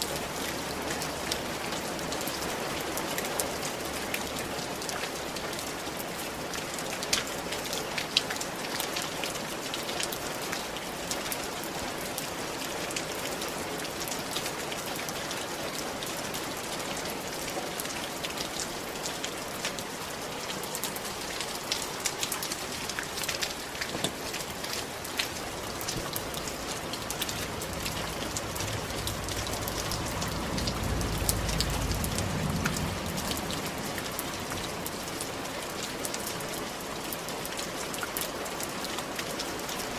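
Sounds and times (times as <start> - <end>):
rain on roof tiles: 0.0 - 39.9
low rumble: 26.2 - 34.9.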